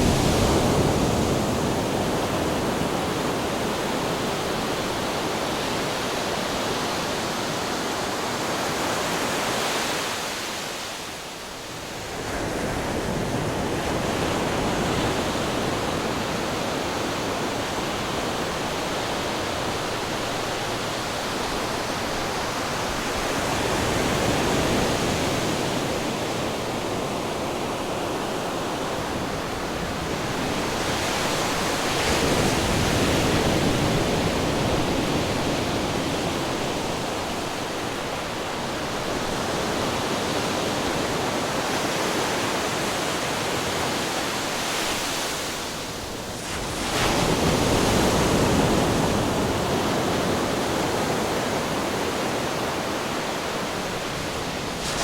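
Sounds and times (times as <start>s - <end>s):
ocean waves breaking on rocks: 12.4s - 55.0s.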